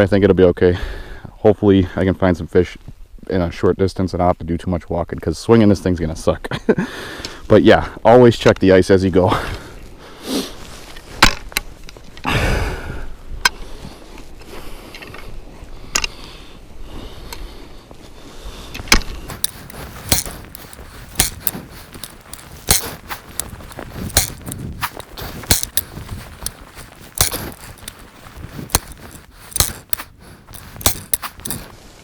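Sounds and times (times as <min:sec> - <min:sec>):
ice chisel scraping ice: 0:19.3 - 0:31.7.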